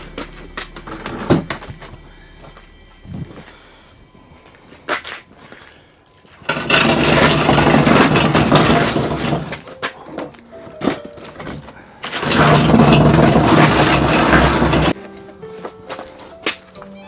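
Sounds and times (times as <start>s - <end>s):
power tool running: 6.5s - 9.6s, 12.2s - 15.0s.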